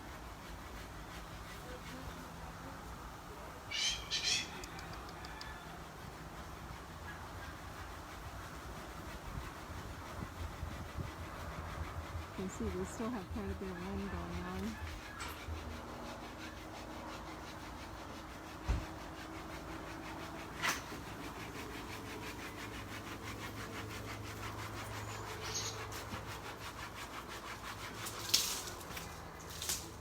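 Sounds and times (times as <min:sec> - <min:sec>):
hand saw cutting wood: 0:06.3 - 0:30.0.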